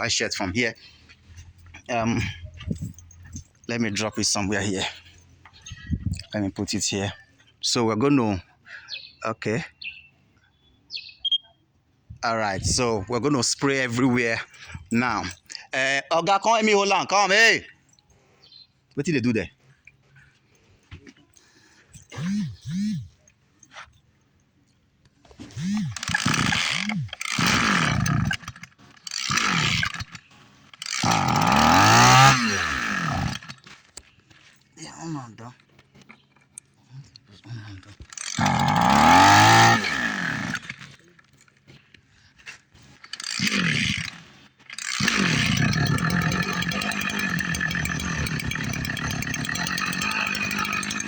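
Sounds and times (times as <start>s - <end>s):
two-stroke sprayer engine starting: 22.1s - 23.2s, 25.3s - 33.8s, 38.0s - 41.4s, 42.8s - 51.0s.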